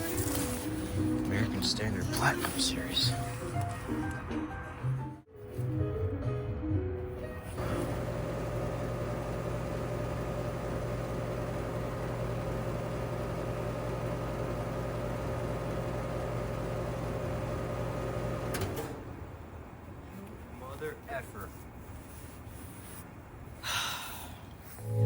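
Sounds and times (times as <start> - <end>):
compressor hum: 0.0 - 4.4, 7.1 - 20.0, 24.6 - 25.0.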